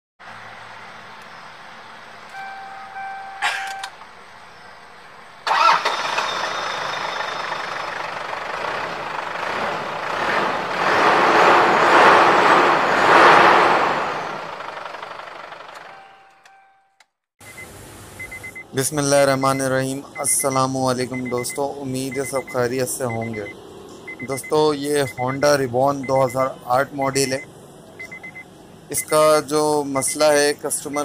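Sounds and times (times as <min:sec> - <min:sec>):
car engine starting and running: 0:00.2 - 0:16.6, 0:17.4 - 0:31.0
short electronic beeps: 0:02.3 - 0:04.6, 0:15.9 - 0:26.4, 0:27.0 - 0:29.3, 0:30.8 - 0:31.0.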